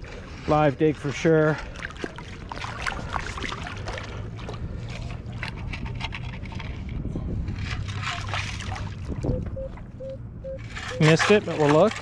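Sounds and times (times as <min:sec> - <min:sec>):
digging tool scraping wet sand: 0:00.0 - 0:01.6, 0:02.6 - 0:09.0, 0:10.6 - 0:12.0.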